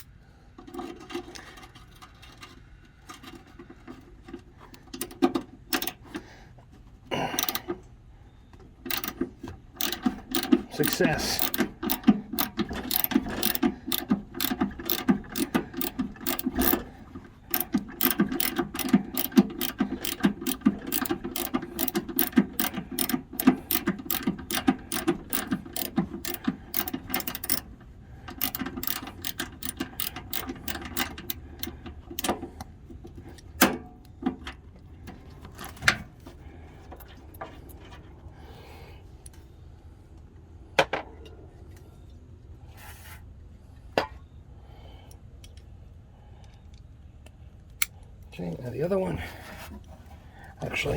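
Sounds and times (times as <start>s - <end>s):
ratchet wrench clicking: 5.0s - 6.0s, 7.4s - 7.6s, 8.9s - 9.2s, 9.8s - 16.9s, 17.5s - 27.7s, 28.3s - 32.3s.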